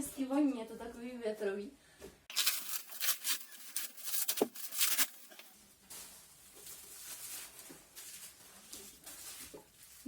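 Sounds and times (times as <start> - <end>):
packaging rustling: 2.3 - 10.0.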